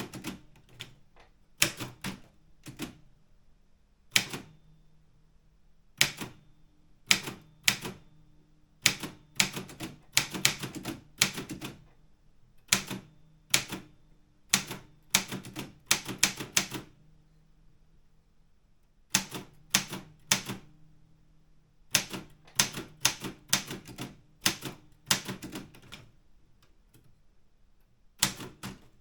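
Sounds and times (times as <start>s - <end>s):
manual typewriter typing: 0.0s - 1.0s, 1.6s - 3.0s, 8.8s - 11.8s, 14.5s - 16.9s, 19.2s - 20.6s, 21.9s - 26.1s, 28.2s - 29.0s.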